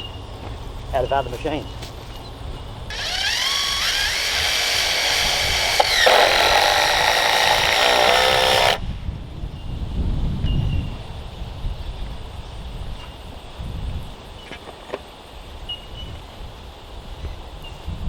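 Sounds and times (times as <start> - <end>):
power drill running: 2.9 - 8.8.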